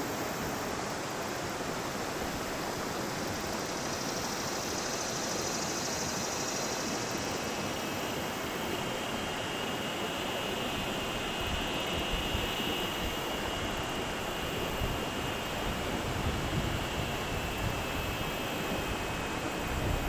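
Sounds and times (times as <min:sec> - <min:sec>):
wind buffeting microphone: 0:11.4 - 0:20.0.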